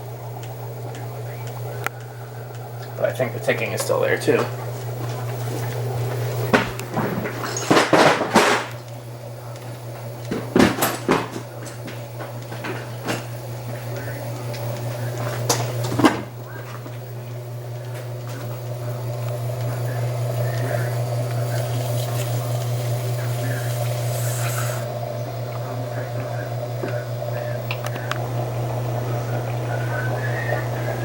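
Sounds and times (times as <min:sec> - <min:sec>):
fan motor humming: 0:00.0 - 0:31.0
handling knocks and clatter: 0:06.5 - 0:08.9, 0:09.6 - 0:13.8.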